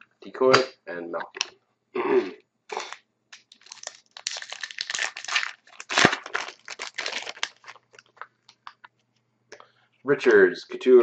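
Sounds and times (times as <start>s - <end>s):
foil wrapper tearing and crinkling: 2.8s - 8.8s.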